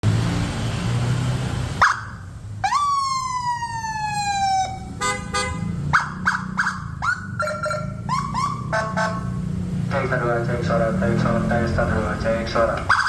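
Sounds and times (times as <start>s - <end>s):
electronic vehicle siren: 1.8s - 5.0s, 5.8s - 9.4s.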